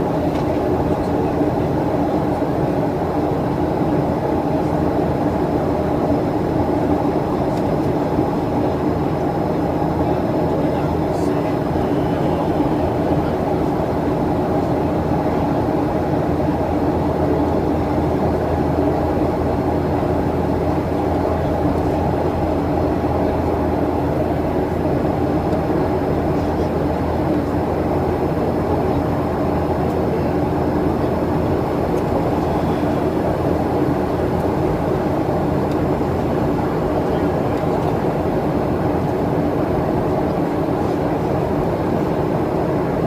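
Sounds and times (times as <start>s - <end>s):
jet engine drone in cabin: 0.0s - 43.0s.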